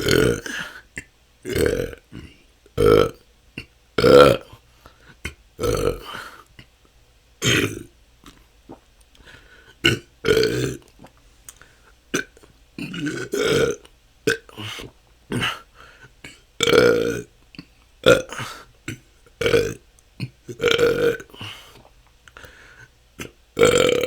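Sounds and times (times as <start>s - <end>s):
person belching: 0.0s - 0.7s, 1.4s - 4.6s, 5.6s - 6.2s, 7.4s - 7.9s, 9.8s - 10.9s, 12.2s - 15.6s, 16.6s - 17.3s, 18.0s - 21.5s, 23.2s - 24.0s
faint mouth clicks: 8.2s - 9.3s, 10.8s - 11.7s, 17.5s - 17.9s.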